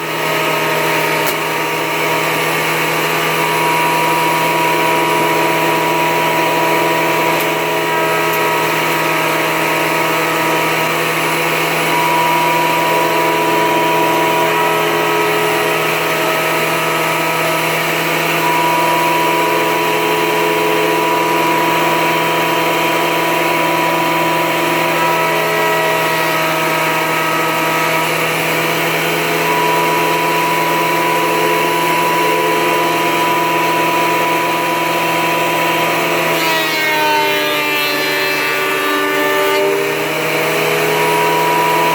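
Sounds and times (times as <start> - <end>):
thickness planer motor whine: 0.0 - 41.9.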